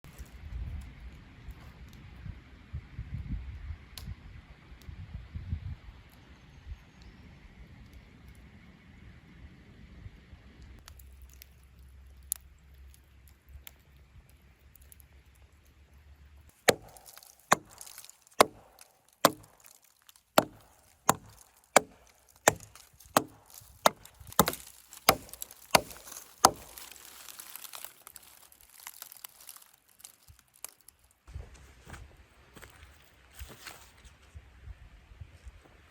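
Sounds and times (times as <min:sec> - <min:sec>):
hatchet chopping tree trunk: 0:16.5 - 0:29.5.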